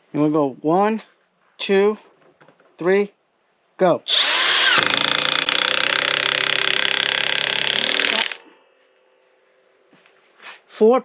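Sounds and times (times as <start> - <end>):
impact wrench hammering: 4.6 - 8.4.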